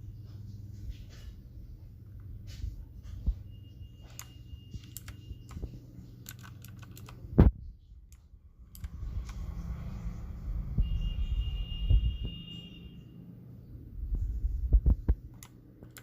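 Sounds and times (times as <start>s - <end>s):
steady low hum: 0.0s - 16.0s
mechanical keyboard clicking: 4.1s - 7.3s, 8.1s - 9.4s, 15.1s - 16.0s.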